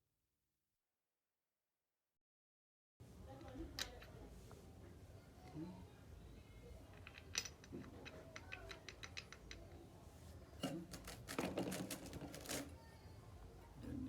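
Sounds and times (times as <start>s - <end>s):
clatter of metal parts: 6.9s - 9.6s
small metal clicks: 6.9s - 9.7s.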